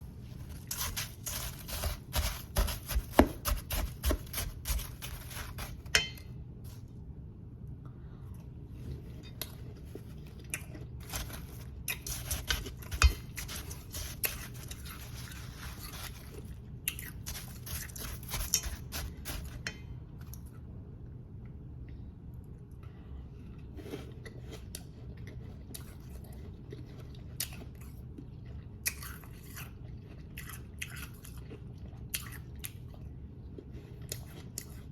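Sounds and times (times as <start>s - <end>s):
ice being chewed: 0.3s - 5.9s, 9.1s - 19.6s, 23.9s - 34.9s.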